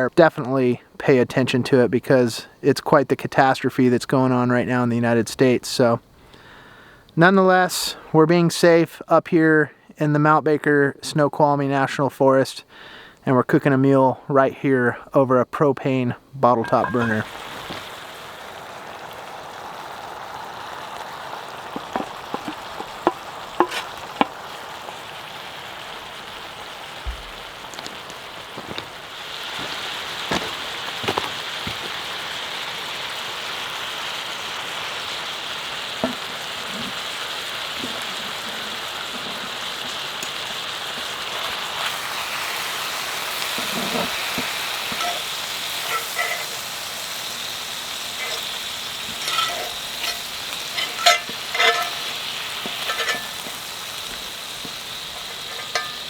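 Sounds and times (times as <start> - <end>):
steak sizzling in a skillet: 16.6 - 56.0
sharp pops and clicks: 21.7 - 24.4.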